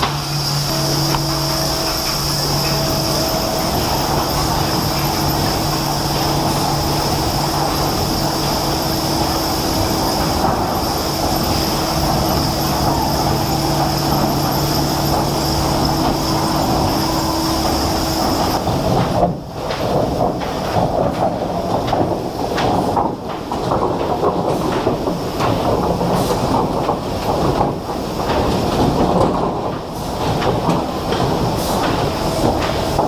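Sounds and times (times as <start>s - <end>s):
high machine whine: 0.0s - 20.2s
heavy machinery rumbling: 0.0s - 33.0s.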